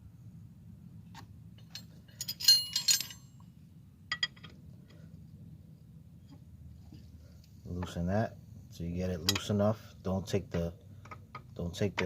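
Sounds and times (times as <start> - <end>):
wrench clinking on metal: 1.6 - 3.4, 4.1 - 4.6.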